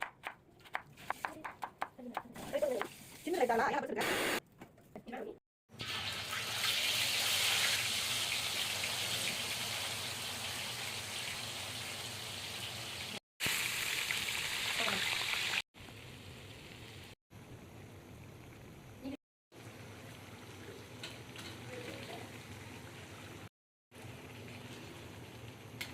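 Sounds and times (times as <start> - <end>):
food sizzling in hot oil: 5.7 - 17.2.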